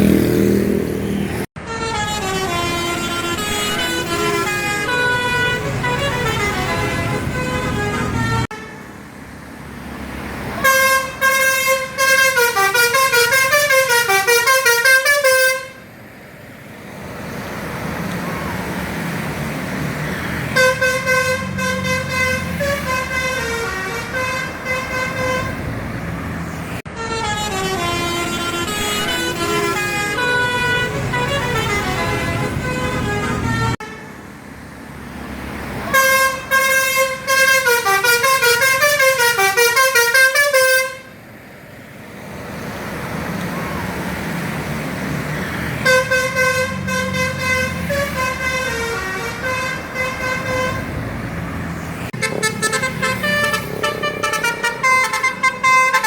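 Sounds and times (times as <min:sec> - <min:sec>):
engine and road rumble: 0:00.0 - 0:56.0
bus air horns playing notes: 0:01.5 - 0:09.0, 0:10.6 - 0:15.9, 0:20.1 - 0:26.1, 0:26.7 - 0:34.2, 0:35.8 - 0:41.2, 0:45.4 - 0:51.4, 0:52.0 - 0:56.0.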